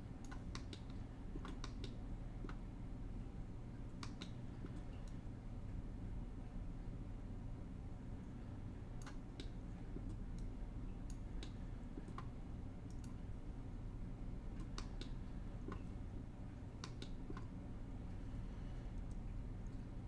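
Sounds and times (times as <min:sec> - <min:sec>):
steady low hum: 0:00.0 - 0:20.0
computer mouse clicking: 0:00.2 - 0:02.6.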